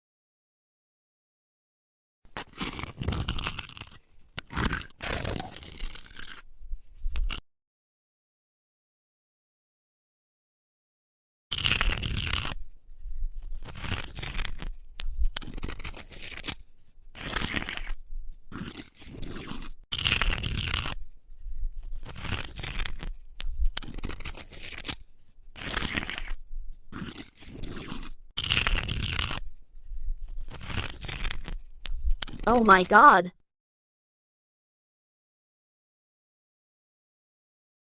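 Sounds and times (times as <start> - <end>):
sharp crackle: 30.4 - 31.6.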